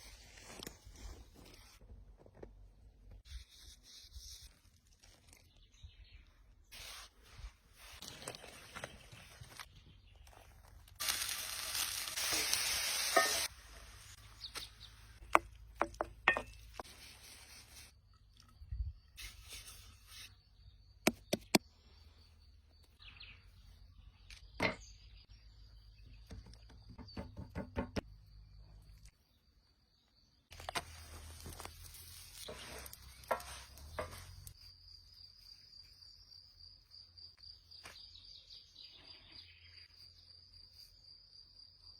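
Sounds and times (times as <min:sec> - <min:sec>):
flatbread sizzling: 0:10.9 - 0:14.3, 0:30.6 - 0:34.6.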